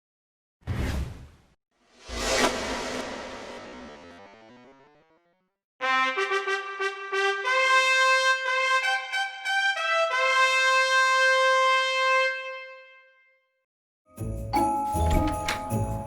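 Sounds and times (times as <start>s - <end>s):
loud sudden sound: 2.0s - 5.1s.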